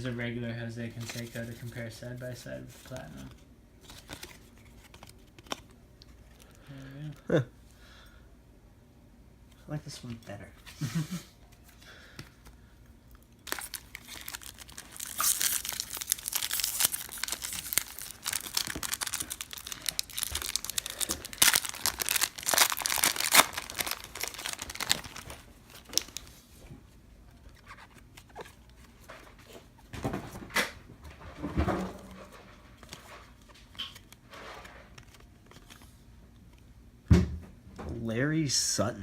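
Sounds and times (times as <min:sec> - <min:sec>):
wrapper snap: 0:13.4 - 0:26.2
wrapper torn and crinkling: 0:13.4 - 0:26.3.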